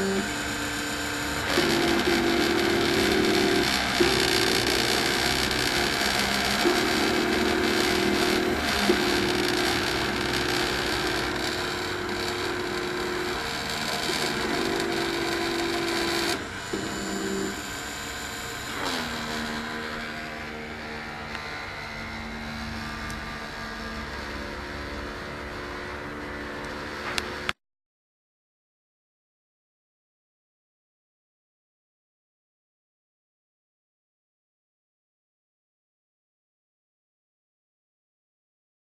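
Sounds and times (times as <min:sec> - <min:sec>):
stepper motors humming: 0:00.0 - 0:27.5
spindle whirring: 0:00.0 - 0:27.6.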